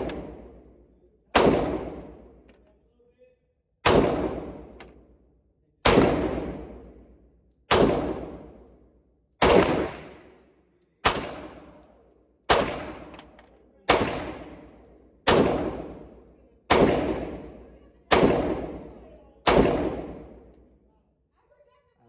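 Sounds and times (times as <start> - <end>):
pistol shots echoing: 0.0 - 2.5, 3.8 - 5.0, 5.8 - 7.1, 7.7 - 8.7, 9.4 - 10.4, 11.0 - 11.9, 12.5 - 20.6.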